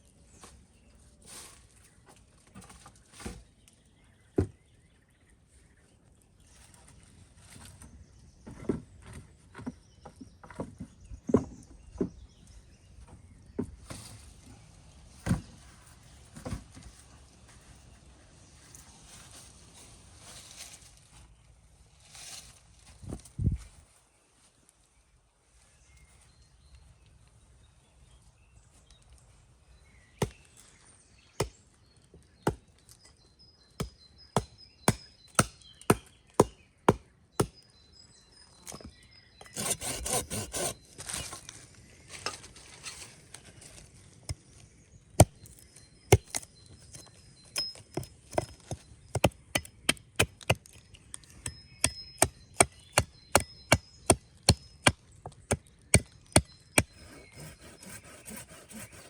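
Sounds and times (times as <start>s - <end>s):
axe chopping wood: 33.8s - 37.6s, 47.6s - 50.8s, 51.4s - 59.0s.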